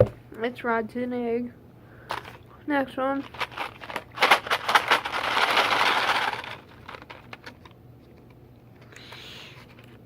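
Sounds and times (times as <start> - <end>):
box rustling: 3.2 - 7.7.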